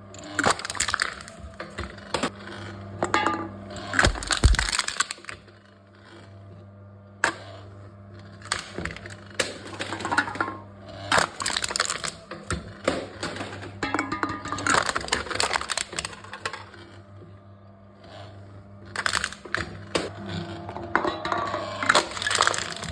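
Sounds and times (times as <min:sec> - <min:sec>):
metal cans being crushed: 0:00.2 - 0:02.3, 0:03.0 - 0:05.4, 0:08.4 - 0:16.7, 0:19.0 - 0:20.1, 0:20.8 - 0:22.9.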